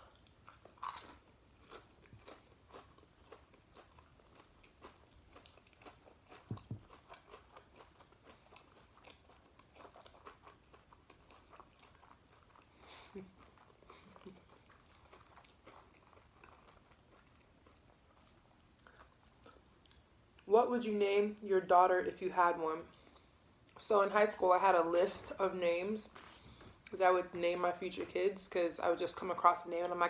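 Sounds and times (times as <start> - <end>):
person chewing food: 0.0 - 20.5
knock: 6.5 - 6.8.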